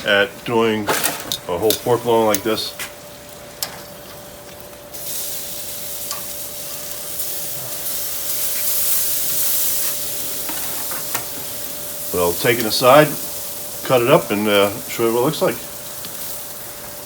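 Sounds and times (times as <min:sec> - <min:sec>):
grill sizzling hiss: 0:00.0 - 0:17.0.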